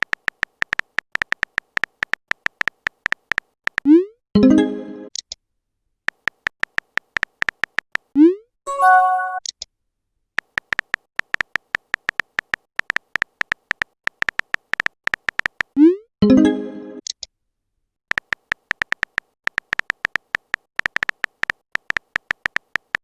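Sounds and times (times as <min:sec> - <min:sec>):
phone keyboard typing clicks: 0:00.0 - 0:03.9, 0:06.1 - 0:08.1, 0:10.4 - 0:15.8, 0:18.1 - 0:23.0
message alert chime: 0:04.4 - 0:05.1, 0:08.7 - 0:09.5.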